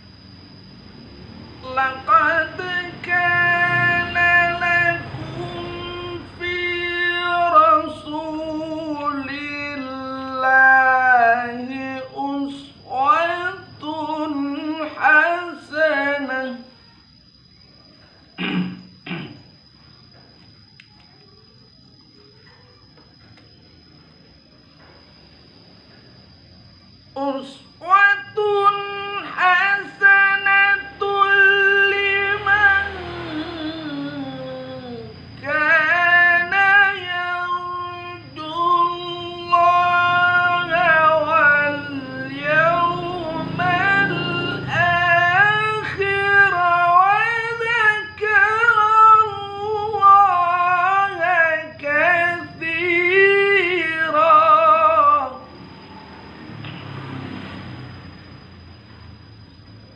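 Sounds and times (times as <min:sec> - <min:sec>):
solo voice chanting recitation: 0:00.9 - 0:17.2, 0:27.1 - 0:55.7.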